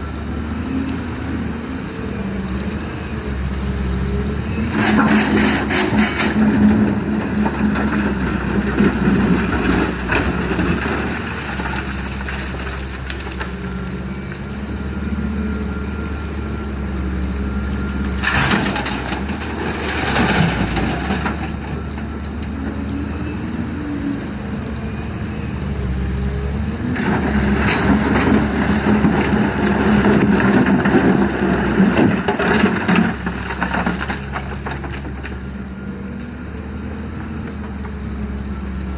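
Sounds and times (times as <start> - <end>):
diesel engine running: 0.0 - 38.9
rocks crashing into truck: 18.1 - 21.8, 27.0 - 35.2.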